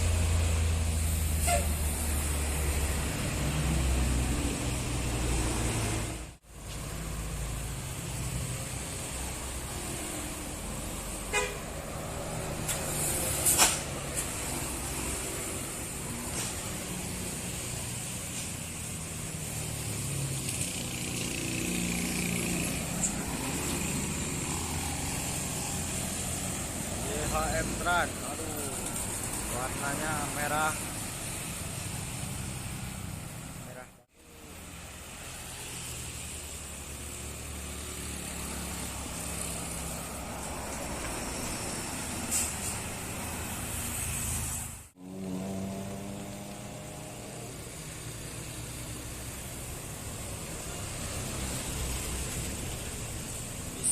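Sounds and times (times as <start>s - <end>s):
diesel bus engine and road noise: 0.0s - 53.9s
passing traffic: 0.0s - 53.9s
sharp air hiss: 39.2s - 44.8s.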